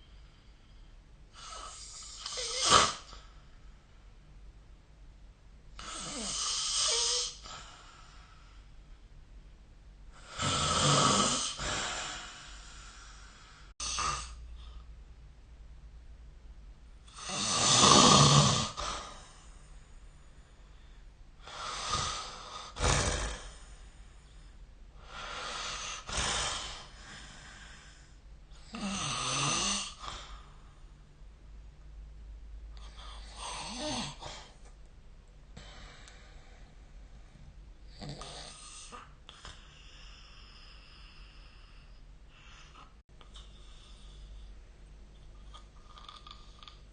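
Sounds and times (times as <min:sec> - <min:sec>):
person snoring: 0:01.3 - 0:03.2, 0:05.8 - 0:08.3, 0:10.1 - 0:14.8, 0:17.1 - 0:19.5, 0:21.4 - 0:23.9, 0:25.0 - 0:30.6, 0:32.8 - 0:34.6.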